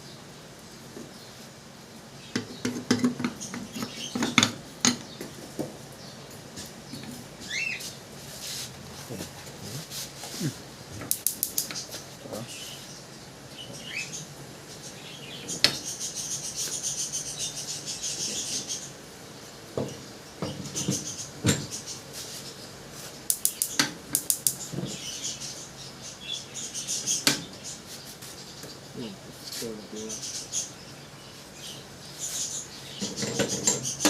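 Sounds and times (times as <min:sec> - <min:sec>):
scratchy high hiss: 0:06.6 - 0:13.0
rattle of clicks: 0:11.0 - 0:11.9, 0:23.3 - 0:24.6.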